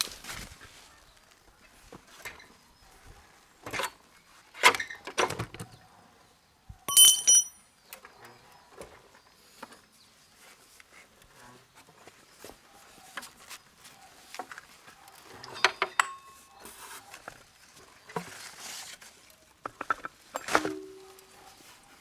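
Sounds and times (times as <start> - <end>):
metallic ring: 6.9 - 7.7.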